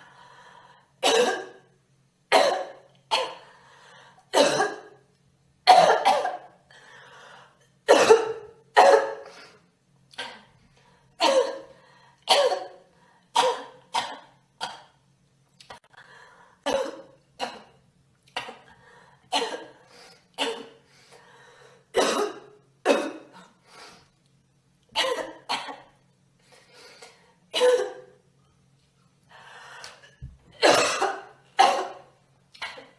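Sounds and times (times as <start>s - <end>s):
faint breaths: 0.0s - 1.0s, 3.4s - 4.3s, 18.7s - 21.9s, 29.3s - 30.2s
girl coughing: 1.0s - 1.6s, 2.3s - 3.4s, 4.3s - 4.9s, 5.7s - 6.5s, 7.9s - 9.2s, 11.2s - 11.7s, 12.3s - 12.8s, 22.0s - 23.3s, 25.0s - 25.9s, 27.5s - 28.1s, 30.6s - 32.9s.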